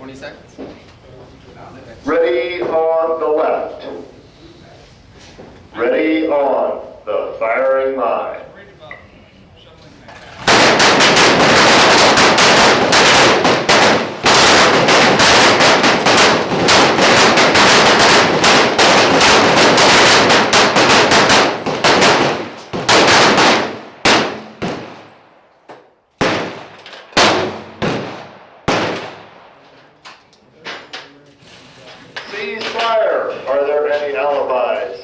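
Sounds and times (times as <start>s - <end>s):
pistols firing: 10.4s - 25.3s, 26.2s - 29.6s.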